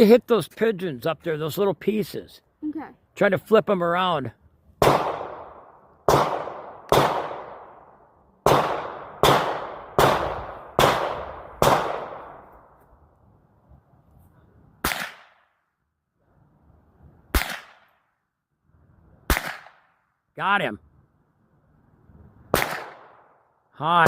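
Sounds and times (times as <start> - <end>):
rifle shots echoing: 4.8 - 12.5, 22.5 - 23.3.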